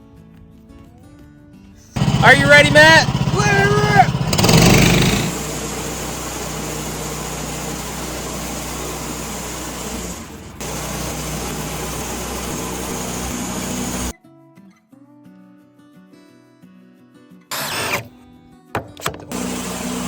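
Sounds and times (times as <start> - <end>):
sawmill engine running: 2.0 - 14.1, 17.5 - 18.0, 19.0 - 20.0.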